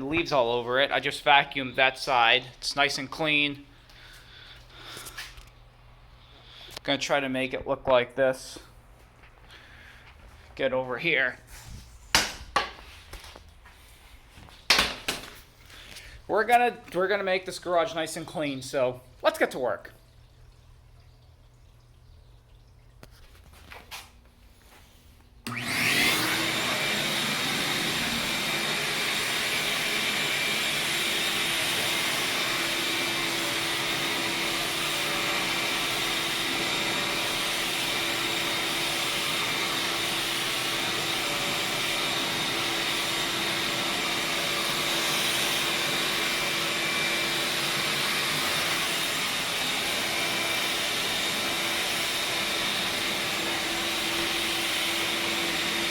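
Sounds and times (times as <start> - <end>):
vacuum cleaner running: 25.4 - 55.9.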